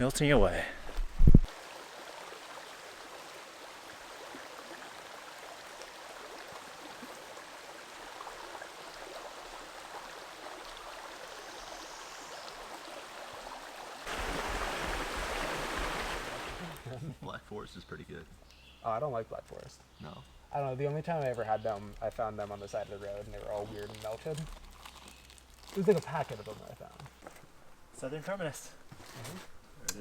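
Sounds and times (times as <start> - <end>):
stream flowing over rocks: 1.5 - 16.9.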